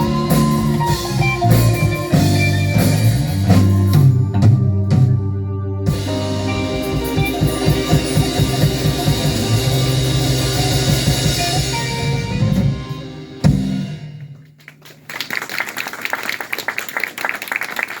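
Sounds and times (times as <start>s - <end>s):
jazz-funk band playing: 0.0s - 14.2s
audience applause: 14.6s - 18.0s.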